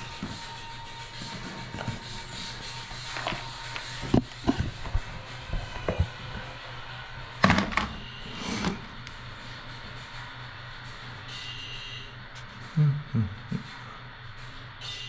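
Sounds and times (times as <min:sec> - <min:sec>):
parts clattering: 0:01.3 - 0:06.5.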